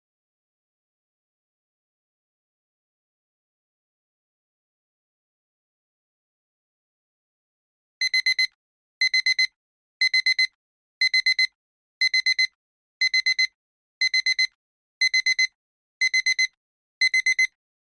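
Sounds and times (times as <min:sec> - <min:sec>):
alarm clock beeping: 0:08.0 - 0:17.6.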